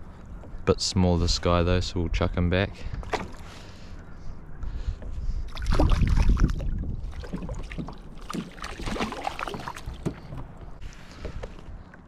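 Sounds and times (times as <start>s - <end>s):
water splashing: 5.5s - 11.2s.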